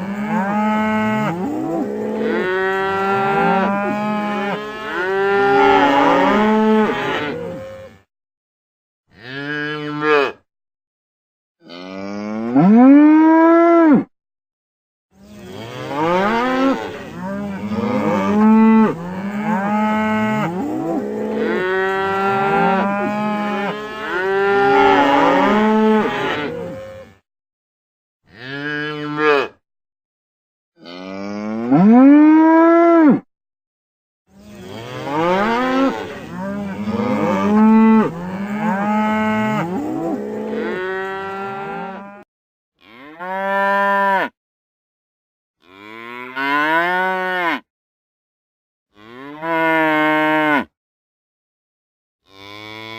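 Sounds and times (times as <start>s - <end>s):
cows mooing: 0.0s - 8.1s, 9.1s - 10.4s, 11.6s - 14.0s, 15.2s - 27.2s, 28.3s - 29.6s, 30.8s - 33.2s, 34.4s - 42.2s, 42.8s - 44.4s, 45.6s - 47.6s, 49.0s - 50.7s, 52.3s - 52.9s.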